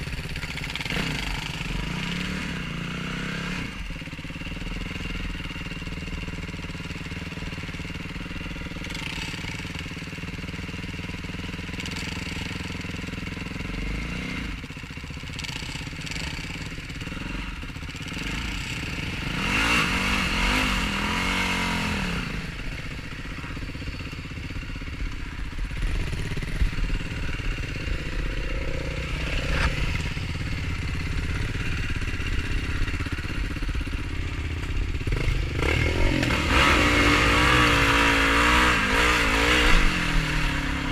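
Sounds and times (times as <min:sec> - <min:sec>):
quad engine revving: 0:00.0 - 0:40.9
quad engines running: 0:00.0 - 0:40.9.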